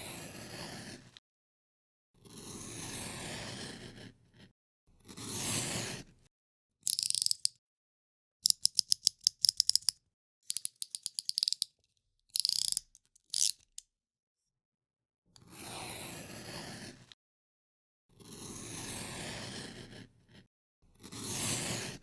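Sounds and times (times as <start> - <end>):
blade rasping across material: 0.1 - 1.1, 2.3 - 6.0, 15.6 - 17.1, 18.2 - 22.0
box cutter blade slider clicking: 6.9 - 7.6, 8.4 - 11.7, 12.4 - 13.8.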